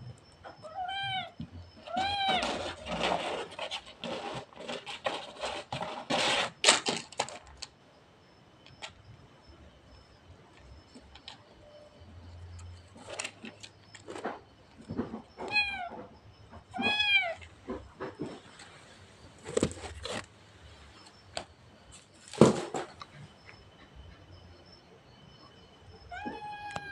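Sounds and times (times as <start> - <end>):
cat meowing: 0.6 - 2.4, 15.4 - 16.0, 16.7 - 17.4, 26.1 - 26.9
rustling: 1.7 - 7.7, 16.7 - 21.1.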